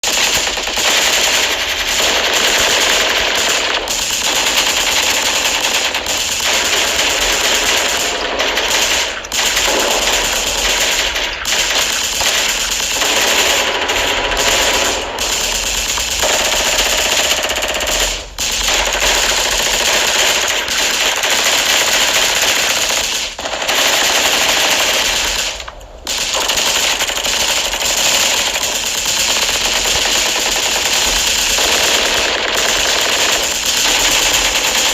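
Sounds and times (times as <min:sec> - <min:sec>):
machine-gun fire: 0:00.0 - 0:34.9.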